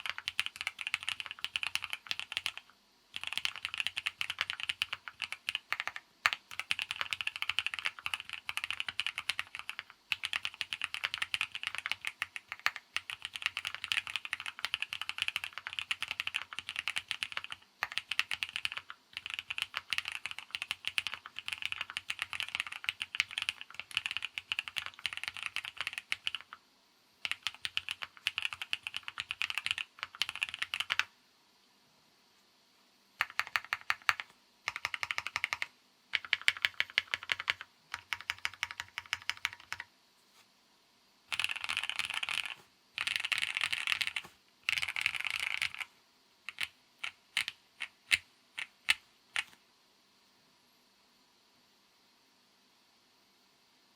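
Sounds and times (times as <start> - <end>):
mechanical keyboard typing: 0.0 - 26.6, 27.2 - 31.1, 33.2 - 39.9, 41.3 - 45.9, 46.5 - 49.6.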